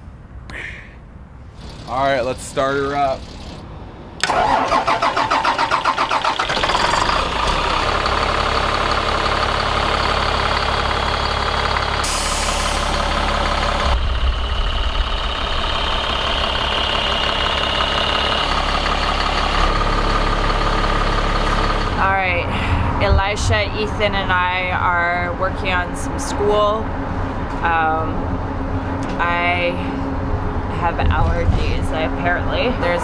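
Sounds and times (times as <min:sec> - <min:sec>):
bus engine idling: 0:01.4 - 0:33.0
bus engine starter cranking: 0:04.2 - 0:14.0.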